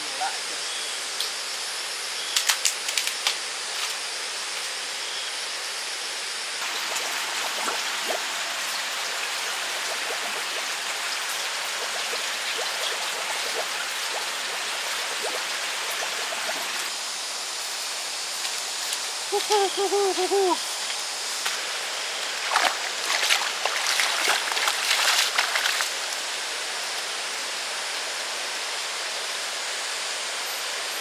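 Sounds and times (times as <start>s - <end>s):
water hissing: 6.6s - 17.0s, 17.6s - 21.4s, 22.2s - 26.2s.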